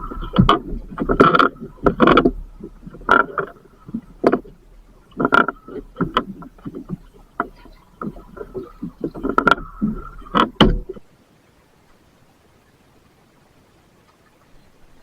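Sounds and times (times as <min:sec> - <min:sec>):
fishing gear knocks and rattles: 0:00.0 - 0:11.0
faint thin whine: 0:00.0 - 0:11.2.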